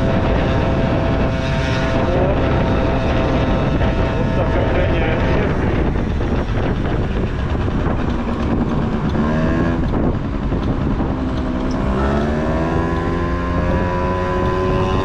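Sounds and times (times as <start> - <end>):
moped engine accelerating: 0.0 - 15.0
wind rumble on microphone: 0.0 - 15.0.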